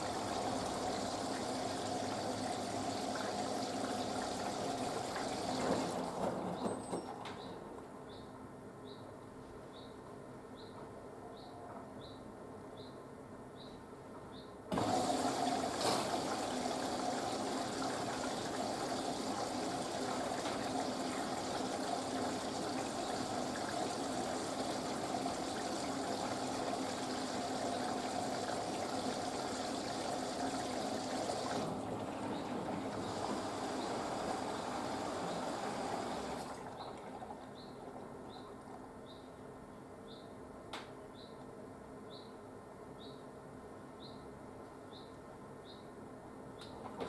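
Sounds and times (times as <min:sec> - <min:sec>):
water rushing into drum: 0:00.0 - 0:07.1, 0:14.7 - 0:38.0.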